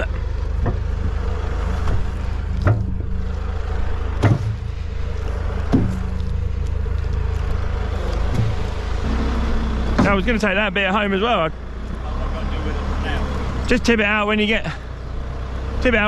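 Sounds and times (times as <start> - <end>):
tractor diesel engine running: 0.0 - 16.0
loader bucket knocks: 0.5 - 3.4, 4.0 - 4.7, 5.6 - 6.2, 8.3 - 9.1, 9.8 - 10.5.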